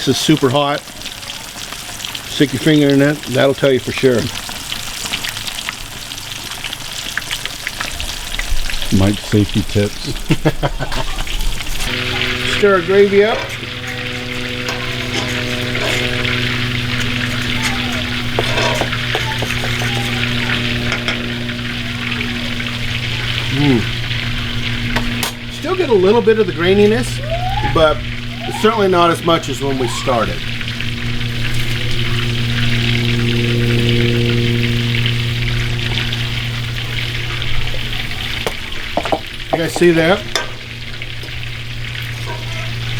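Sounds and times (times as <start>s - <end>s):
steak frying in hot oil: 0.0s - 42.9s
low hum: 9.9s - 42.9s.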